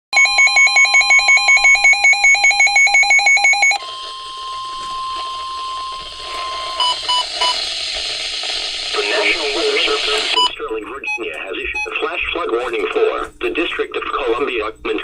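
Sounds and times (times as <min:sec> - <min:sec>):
steady alarm tone: 0:00.2 - 0:07.8.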